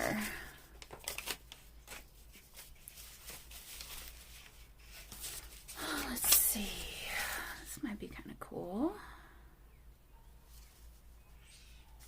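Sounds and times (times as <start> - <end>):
paper crinkling: 0.0 - 7.7
paper rustling: 0.0 - 7.7.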